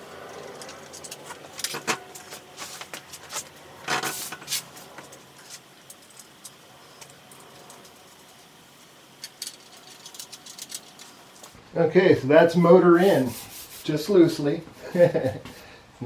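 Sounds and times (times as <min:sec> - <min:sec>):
metal bolts and tools clinking: 0:00.0 - 0:11.6.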